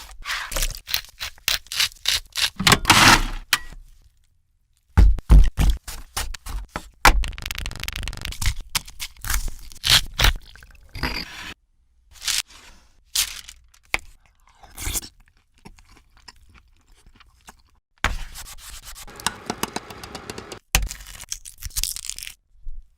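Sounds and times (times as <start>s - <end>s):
utensils scraping and crunching food: 0.0s - 3.4s.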